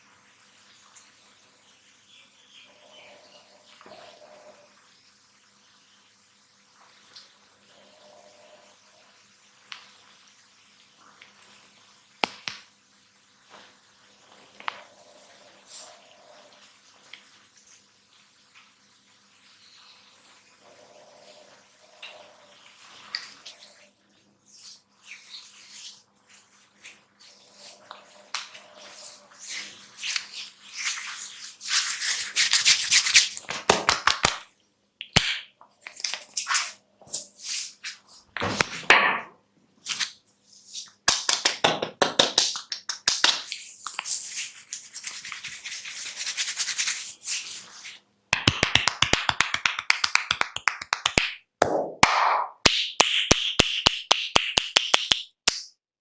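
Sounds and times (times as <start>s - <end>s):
hands rubbing through hair: 24.5s - 34.5s, 35.8s - 38.8s, 39.8s - 41.6s, 42.3s - 51.4s.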